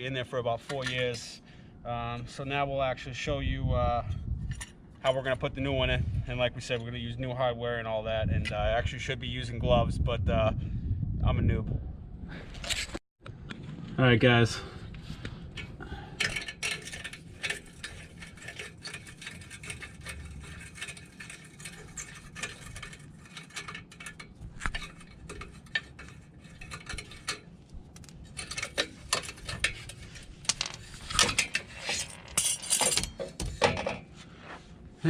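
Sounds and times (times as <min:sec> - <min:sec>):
metal exhaust parts clinking: 0:15.5 - 0:34.1.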